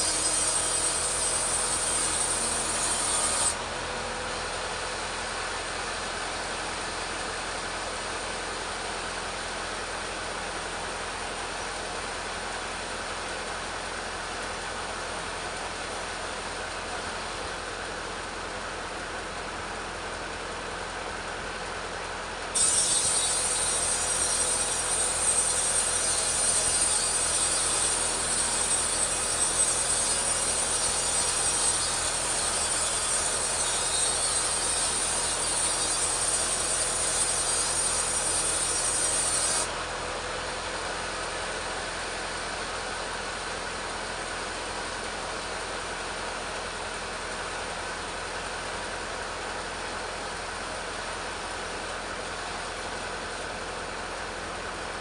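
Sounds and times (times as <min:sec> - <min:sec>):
chainsaw cutting log: 0:00.0 - 0:03.6, 0:22.6 - 0:39.7.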